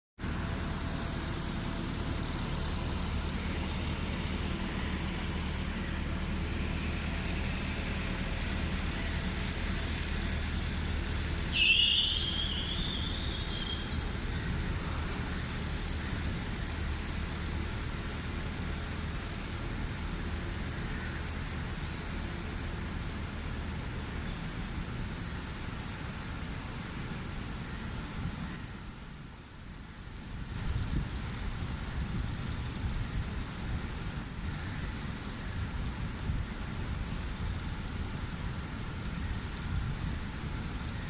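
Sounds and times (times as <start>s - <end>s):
bird high falling call: 11.5s - 14.2s.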